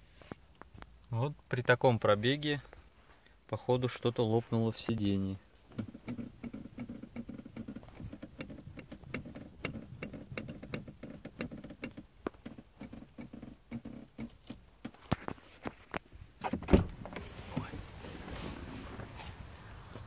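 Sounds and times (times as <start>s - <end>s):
car seat creaking and clicking: 5.7s - 20.0s.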